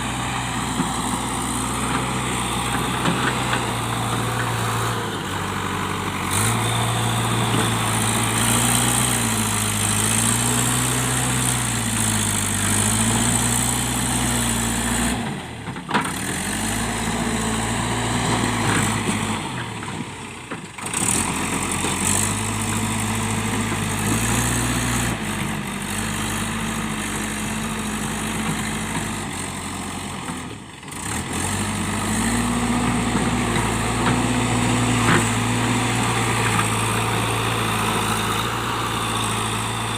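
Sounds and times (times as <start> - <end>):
diesel engine revving: 0.0 - 39.9.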